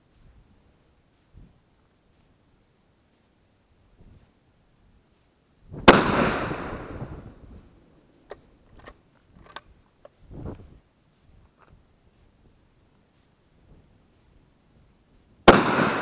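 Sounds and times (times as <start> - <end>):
rifle shot echoing: 5.8 - 7.4, 15.5 - 16.0.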